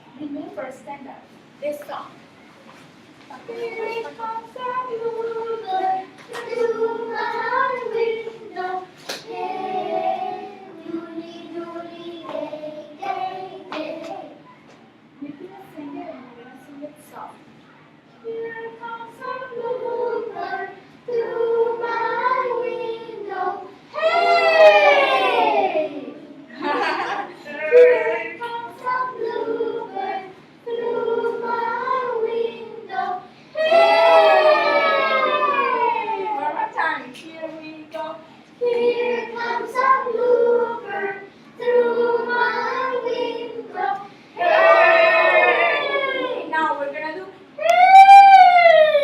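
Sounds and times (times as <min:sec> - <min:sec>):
children singing together: 0:03.5 - 0:14.5, 0:18.3 - 0:36.7, 0:38.6 - 0:46.5.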